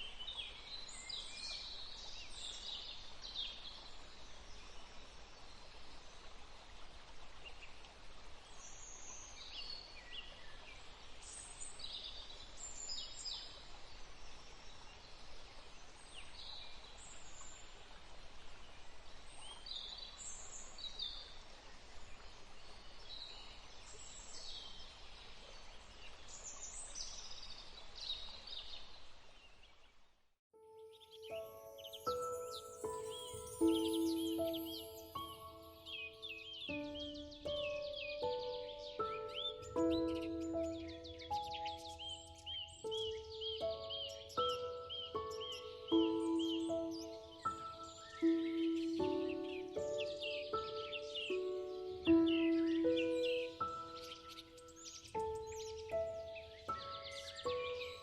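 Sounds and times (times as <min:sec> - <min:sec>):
faint background hiss: 0:00.0 - 0:58.0
birds chirping: 0:30.8 - 0:58.0.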